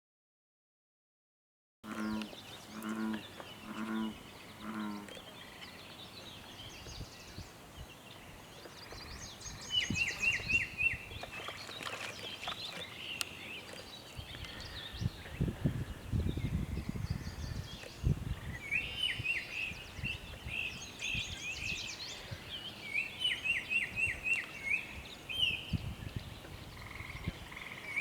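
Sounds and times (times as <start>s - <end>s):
low droning animal calls: 1.8s - 5.8s
birds chirping: 1.8s - 28.0s.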